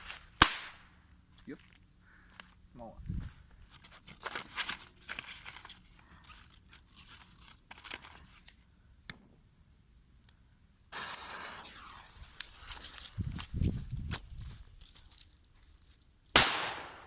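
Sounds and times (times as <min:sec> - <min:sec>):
firework hissing: 0:00.0 - 0:00.6, 0:10.9 - 0:13.2
sharp pop: 0:00.4 - 0:00.8, 0:16.4 - 0:17.0
crackling and crunching: 0:03.6 - 0:08.6, 0:11.0 - 0:17.0.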